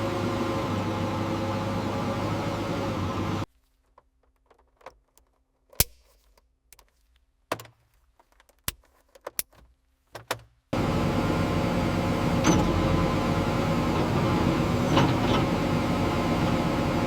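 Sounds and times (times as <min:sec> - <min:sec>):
loud steady machine noise: 0:00.0 - 0:03.4, 0:10.8 - 0:17.0.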